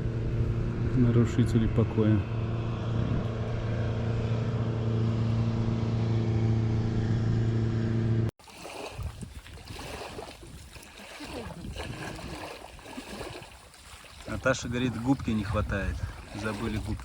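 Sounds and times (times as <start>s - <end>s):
motorboat engine drone: 0.0s - 8.3s, 9.7s - 17.0s
water splashing: 8.4s - 17.0s.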